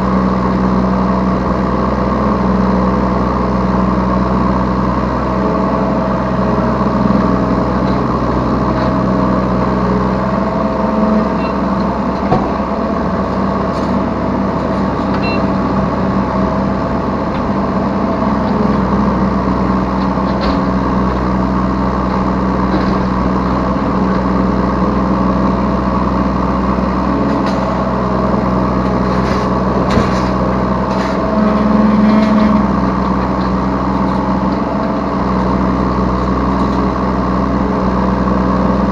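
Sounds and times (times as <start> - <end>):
excavator diesel engine running: 0.0 - 38.9
hydraulic tones shifting: 11.0 - 15.9
sharp knocks: 12.2 - 12.8.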